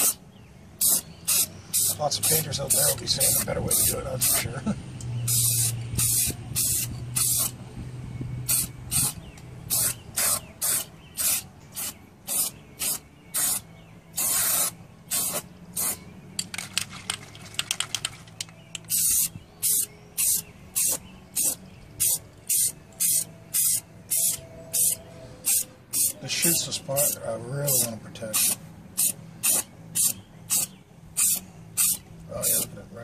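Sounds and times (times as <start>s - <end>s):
aerosol can spraying bursts: 0.8s - 4.4s, 5.3s - 7.6s, 8.5s - 13.6s, 14.2s - 16.0s, 18.9s - 26.2s, 27.7s - 32.6s.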